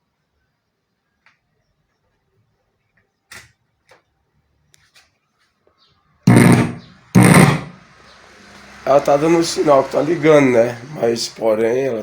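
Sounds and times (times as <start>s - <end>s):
harsh speaker bursts: 6.3s - 7.8s, 8.8s - 12.0s.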